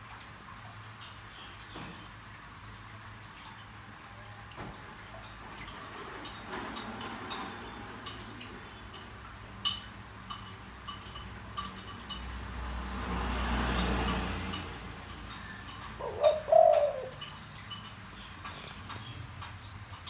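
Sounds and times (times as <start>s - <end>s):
light clicks and clinks: 4.6s - 20.0s.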